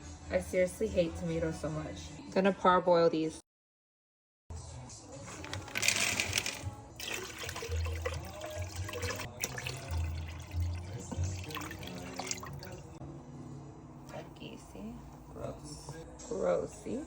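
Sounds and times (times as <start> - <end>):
background music: 0.0 - 3.4, 4.5 - 17.0
water running: 6.2 - 13.0.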